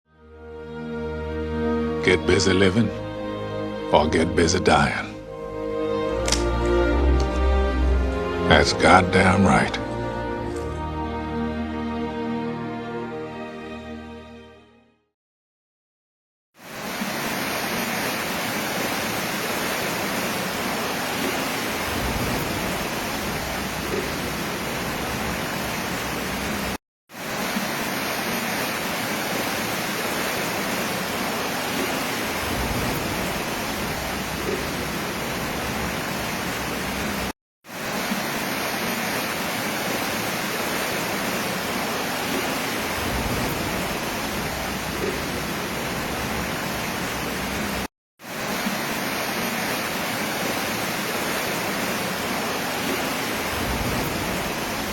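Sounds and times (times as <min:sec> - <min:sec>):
floodwater rushing: 0:16.6 - 0:54.9.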